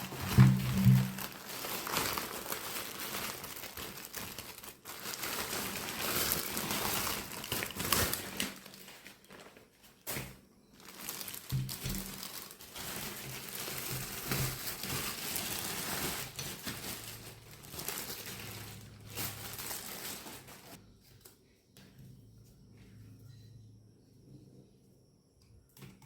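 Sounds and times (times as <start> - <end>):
packaging crinkling: 0.0 - 20.8.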